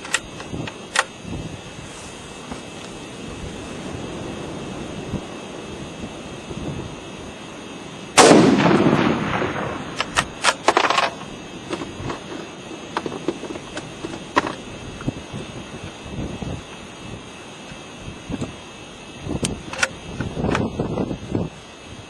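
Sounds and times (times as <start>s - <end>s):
sharp clicks and knocks: 0.0s - 1.1s, 10.0s - 15.1s, 19.4s - 20.7s
rifle shot with echo: 8.2s - 11.1s.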